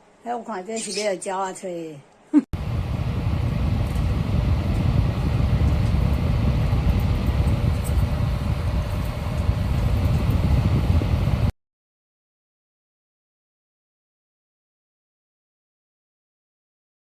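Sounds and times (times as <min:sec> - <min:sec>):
fan wind on microphone: 0:02.6 - 0:11.6.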